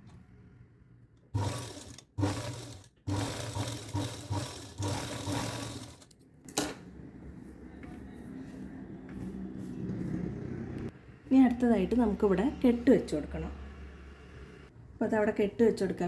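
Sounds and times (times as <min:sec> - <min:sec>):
electric sewing machine stitching: 0:01.3 - 0:06.1.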